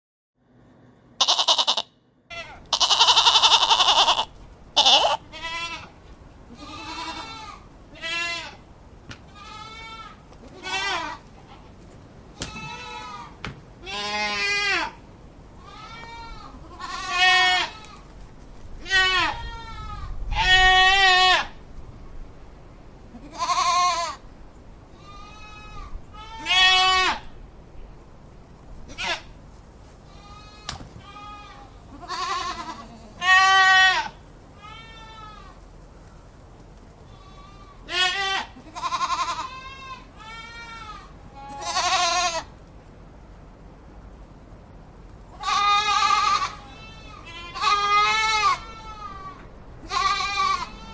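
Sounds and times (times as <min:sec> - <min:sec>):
goats bleating: 0:01.2 - 0:05.9, 0:06.5 - 0:08.6, 0:09.3 - 0:11.2, 0:12.4 - 0:15.0, 0:15.6 - 0:18.0, 0:25.0 - 0:27.2, 0:30.1 - 0:35.6, 0:37.1 - 0:42.5, 0:45.3 - 0:50.9.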